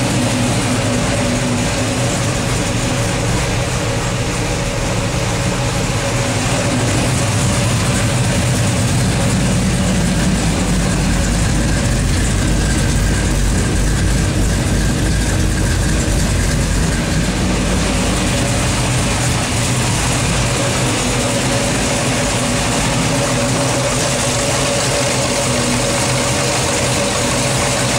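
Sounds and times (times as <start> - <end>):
vee eight engine idling: 0.0 - 27.9.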